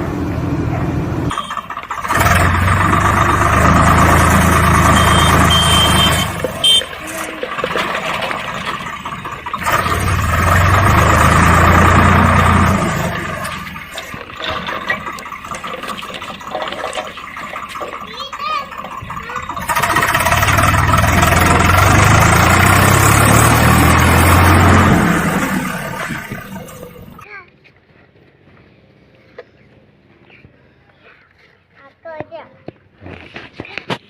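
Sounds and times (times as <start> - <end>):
motor running: 1.3 - 27.2.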